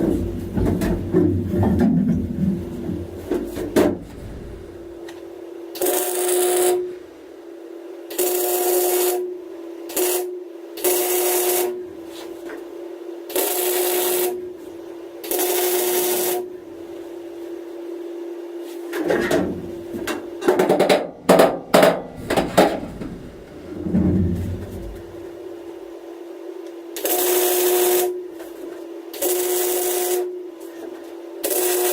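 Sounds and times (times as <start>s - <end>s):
steady welder hum: 0.0s - 31.9s
welder crackling and hissing: 4.1s - 7.0s, 8.1s - 9.3s, 9.9s - 12.4s, 27.0s - 28.2s, 29.2s - 30.8s, 31.4s - 31.9s
hammer tapping sheet metal: 20.4s - 22.8s.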